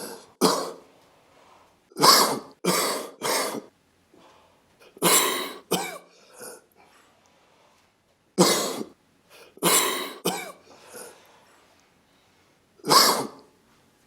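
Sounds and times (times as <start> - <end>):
person coughing: 0.0 - 0.8, 2.0 - 3.7, 4.8 - 6.7, 8.4 - 11.2, 12.8 - 13.5.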